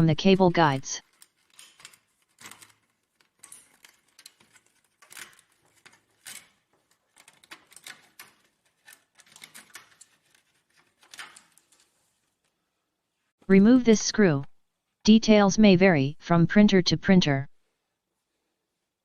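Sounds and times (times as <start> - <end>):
cables pulled from plastic guides: 1.0 - 12.6.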